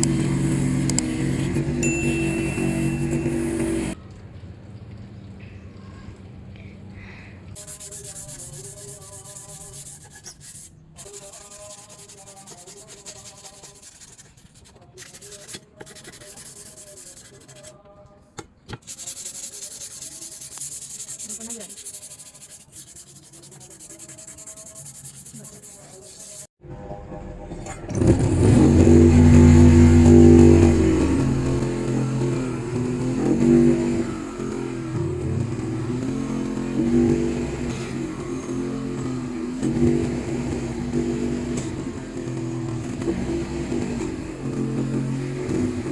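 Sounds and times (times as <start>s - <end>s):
loud pitched hum: 0.0s - 4.0s, 26.6s - 45.9s
sanding on metal: 7.6s - 17.8s, 18.8s - 26.5s.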